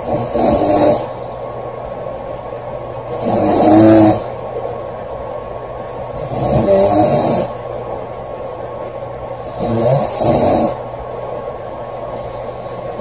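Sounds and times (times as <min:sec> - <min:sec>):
girl snoring loudly: 0:00.0 - 0:01.1, 0:03.2 - 0:04.3, 0:06.2 - 0:07.5, 0:09.6 - 0:10.8
quiet breathing: 0:00.0 - 0:01.8, 0:11.9 - 0:13.0.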